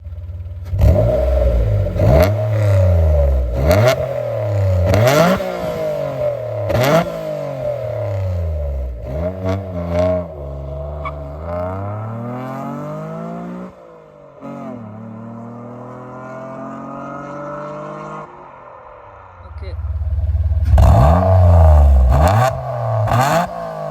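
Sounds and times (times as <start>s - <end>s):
engine revving through loud exhaust: 0.6s - 13.7s, 20.0s - 23.9s.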